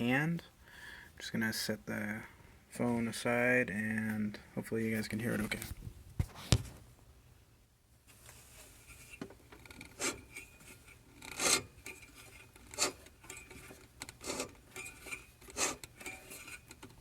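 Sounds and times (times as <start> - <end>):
metallic scraping inside engine: 8.8 - 16.8.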